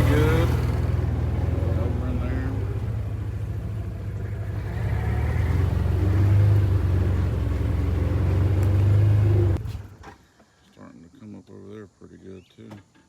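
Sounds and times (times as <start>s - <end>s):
vehicle engine droning: 0.0s - 10.1s.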